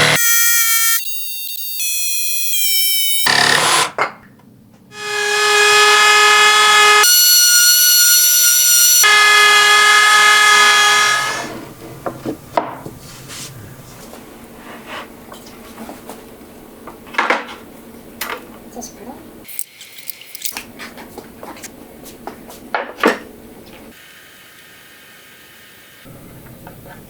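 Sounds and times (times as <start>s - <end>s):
power tool motor whining: 5.0s - 11.6s.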